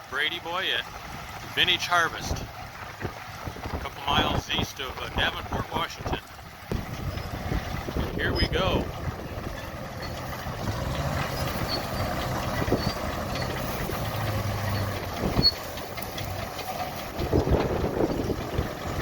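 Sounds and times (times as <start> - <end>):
engines running low hum: 0.0 - 19.0
short thumps: 6.7 - 8.6.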